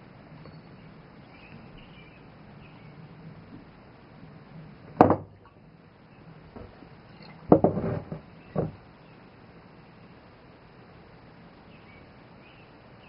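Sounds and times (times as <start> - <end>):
knocks and shuffling: 6.5 - 8.9
wooden back-roller cracking: 7.4 - 8.8.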